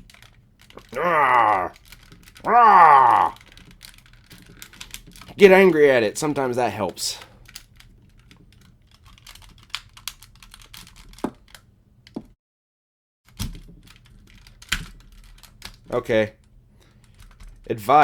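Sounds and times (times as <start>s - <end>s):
plastic toy parts clicking: 3.4s - 5.4s, 7.4s - 11.6s, 13.3s - 15.9s
sharp plastic clacks: 3.4s - 5.5s.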